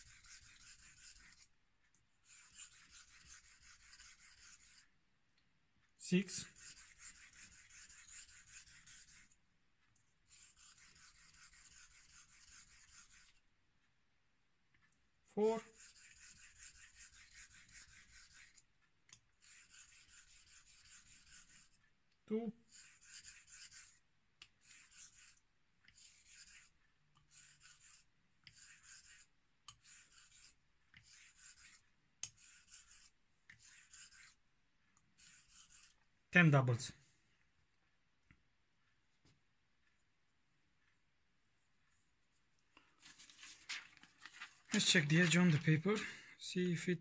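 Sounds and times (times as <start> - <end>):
razor blade scraping on whetstone: 2.3 - 4.8, 10.3 - 13.3, 15.6 - 18.6, 19.4 - 21.8, 22.7 - 24.0, 24.6 - 34.4, 35.2 - 36.0.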